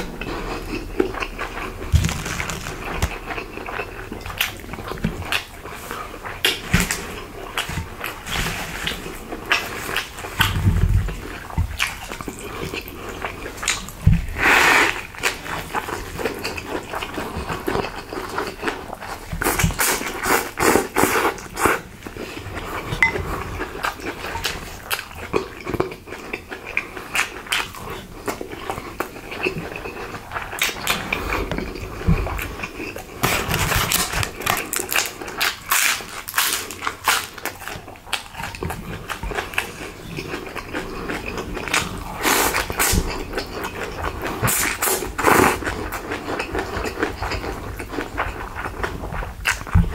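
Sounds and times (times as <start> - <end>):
chewing and wet mouth noises: 0.0 - 49.9
crisp clicks and crackles: 1.9 - 3.5, 33.2 - 38.7.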